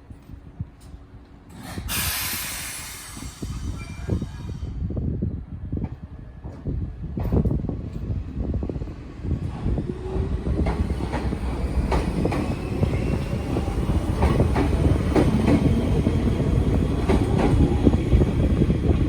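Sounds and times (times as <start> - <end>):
train low rumble: 0.0 - 19.0
train wheels clacking over rail joints: 10.6 - 18.2.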